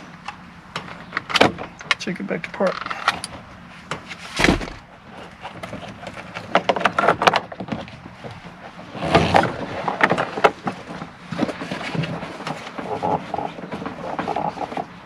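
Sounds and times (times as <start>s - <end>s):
heavy thump: 4.4s - 4.9s.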